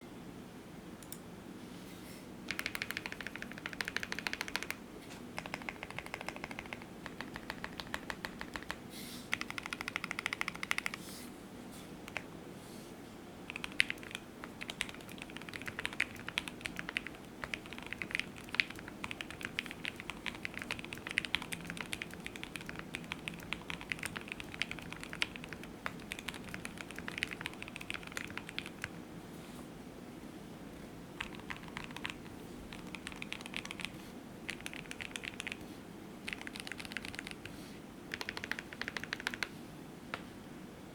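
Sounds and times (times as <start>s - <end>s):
mechanical keyboard typing: 2.5s - 11.0s, 12.1s - 12.3s, 13.5s - 29.0s, 31.2s - 35.6s, 36.2s - 37.5s, 38.1s - 39.5s.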